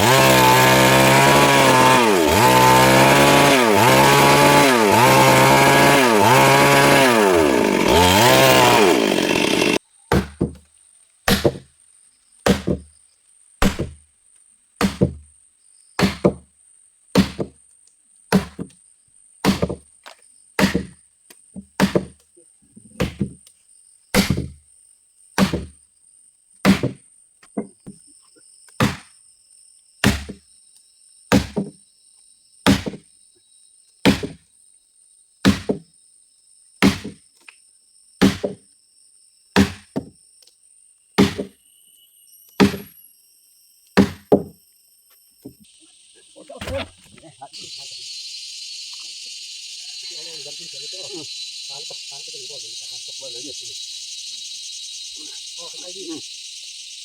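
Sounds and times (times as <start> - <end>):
heavy blows into wood: 0.0 - 10.6.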